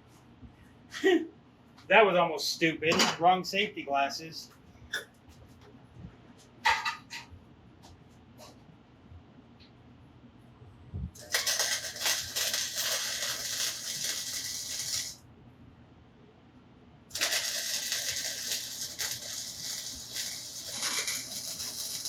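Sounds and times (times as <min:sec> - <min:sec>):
welder crackling sizzle: 0:11.1 - 0:15.3, 0:17.1 - 0:22.0.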